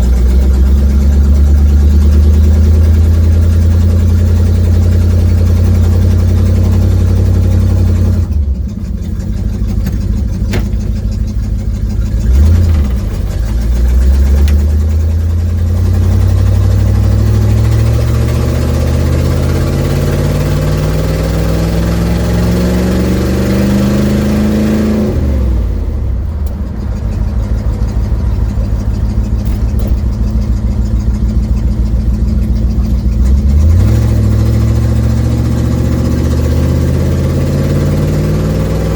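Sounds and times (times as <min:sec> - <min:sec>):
car engine with exhaust leak: 0:00.0 - 0:38.9.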